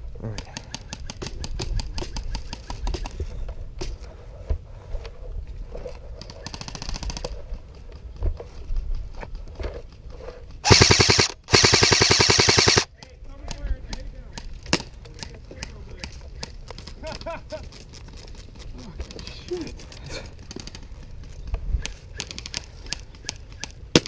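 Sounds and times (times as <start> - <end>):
airsoft gun firing full-auto: 10.6 - 12.9
distant airsoft fire: 10.6 - 12.9.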